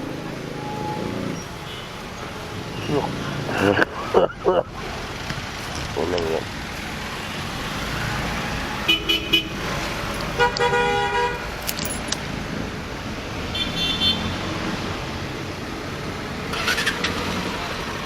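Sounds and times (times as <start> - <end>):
road traffic noise: 0.0 - 18.0
vehicle horn: 8.6 - 9.6, 10.4 - 11.5, 13.5 - 14.4.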